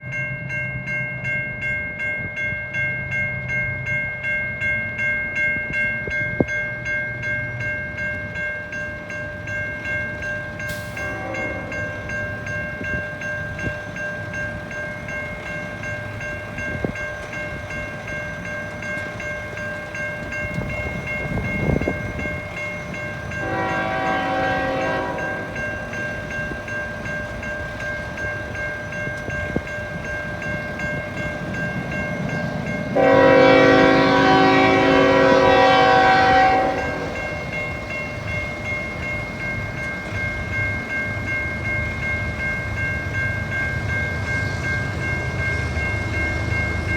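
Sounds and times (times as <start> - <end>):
level-crossing bell ringing: 0.0 - 46.9
passing train rumble: 0.0 - 46.9
locomotive horn blasts: 11.0 - 12.1, 23.4 - 25.6, 32.9 - 37.4.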